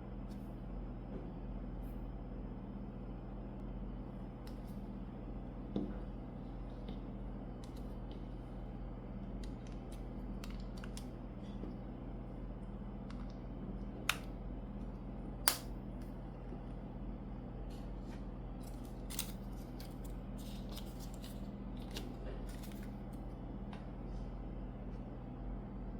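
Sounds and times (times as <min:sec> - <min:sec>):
steady low hum: 0:00.0 - 0:25.9
plastic clicks and snaps: 0:15.5 - 0:15.7.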